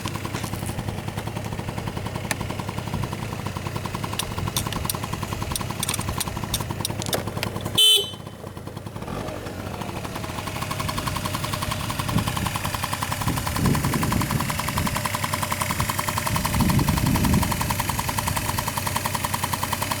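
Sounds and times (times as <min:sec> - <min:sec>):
scooter engine running: 0:00.0 - 0:20.0
horn beep: 0:07.7 - 0:08.4.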